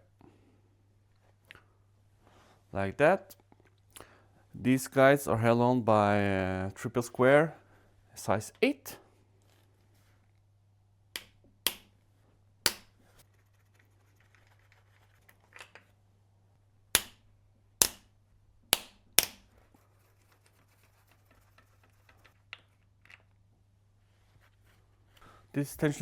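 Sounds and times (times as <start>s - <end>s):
sharp metallic clicks of hand tools: 11.2s - 11.9s, 12.7s - 12.9s, 17.0s - 17.2s, 18.8s - 19.4s.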